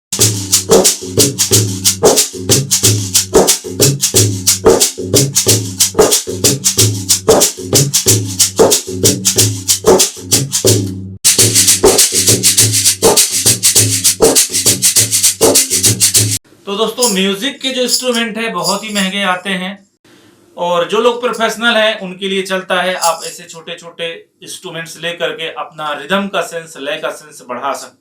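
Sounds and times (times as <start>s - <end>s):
backing music with low bass: 0.2s - 16.4s
shaker rhythm: 0.2s - 16.4s, 17.0s - 17.3s, 17.9s - 19.1s, 23.0s - 23.4s.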